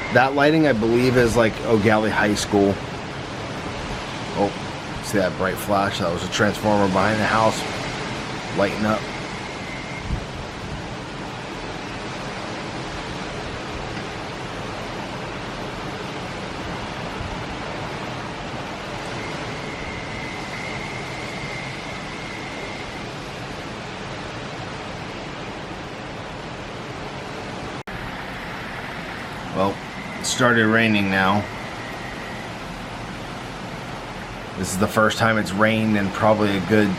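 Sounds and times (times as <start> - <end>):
faint high steady tone: 0.0 - 2.5, 5.3 - 12.5, 18.0 - 23.9, 27.9 - 36.9
hurricane wind: 0.0 - 36.9
rain: 0.0 - 36.9.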